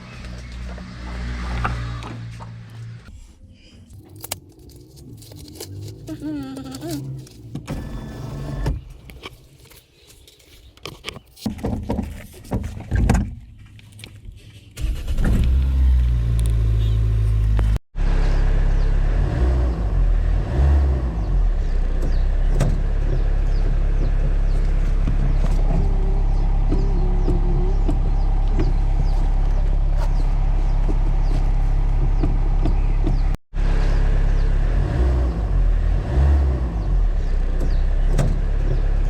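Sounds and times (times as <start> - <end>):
vehicle engine running: 14.8 - 39.0.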